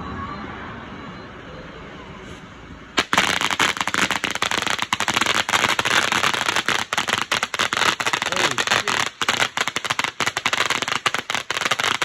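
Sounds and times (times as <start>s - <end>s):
firecrackers popping: 3.0s - 12.0s.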